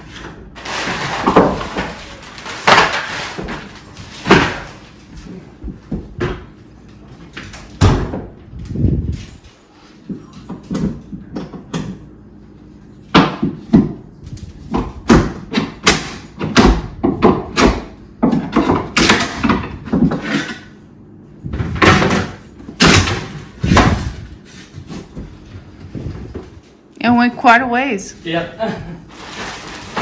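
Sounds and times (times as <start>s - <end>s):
flooring being pried up: 0.0s - 6.5s, 13.2s - 20.7s, 21.5s - 26.6s, 28.3s - 30.0s.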